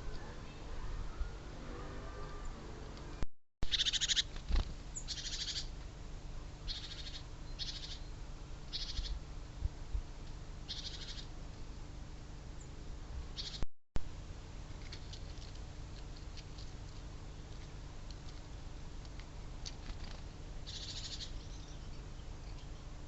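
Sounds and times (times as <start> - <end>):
bird buzzy high-pitched call: 3.7 - 4.3, 5.0 - 5.7, 6.7 - 8.1, 8.7 - 9.2, 10.7 - 11.3, 13.4 - 13.6, 20.6 - 22.6.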